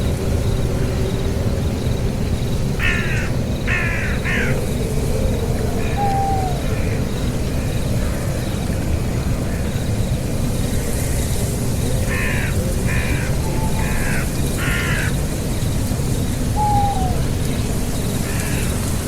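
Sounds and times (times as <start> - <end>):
harsh bird calls: 5.6 - 7.2, 15.9 - 18.8.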